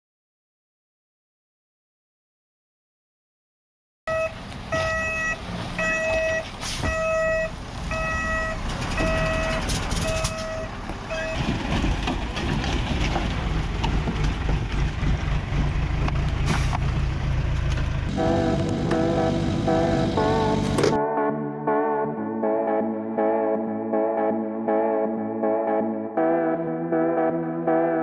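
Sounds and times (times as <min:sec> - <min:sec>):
reversing alarm beeping: 0:04.1 - 0:11.4, 0:18.1 - 0:21.0
diesel engine running: 0:04.4 - 0:21.0
music: 0:18.1 - 0:28.0.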